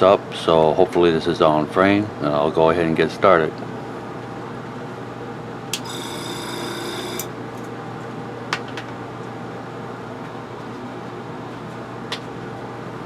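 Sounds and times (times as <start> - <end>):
air compressor humming: 5.6 - 7.6.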